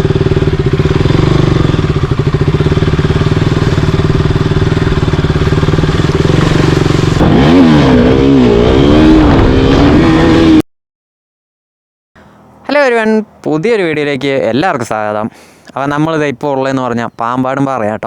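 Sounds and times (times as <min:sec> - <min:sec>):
motorcycle engine revving: 0:00.0 - 0:10.6.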